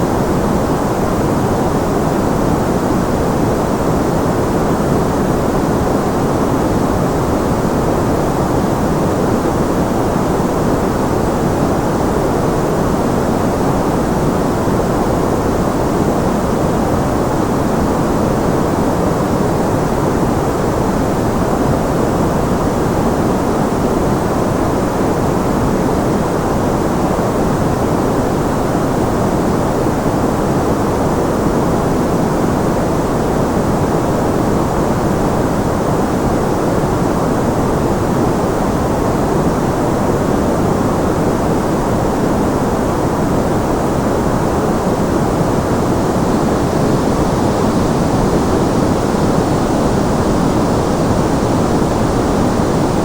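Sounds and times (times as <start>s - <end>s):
white noise hiss: 0.0s - 53.0s.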